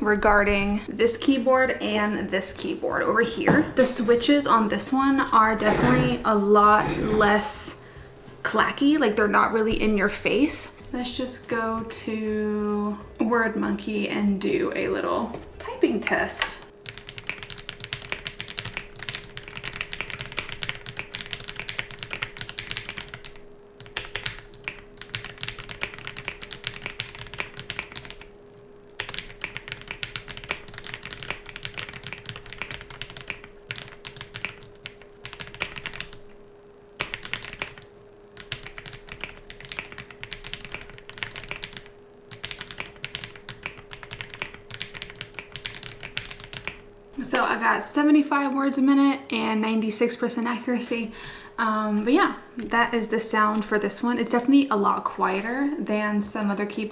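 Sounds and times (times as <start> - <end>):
fast typing on keyboard: 16.8 - 28.3, 28.9 - 36.3, 37.0 - 46.9.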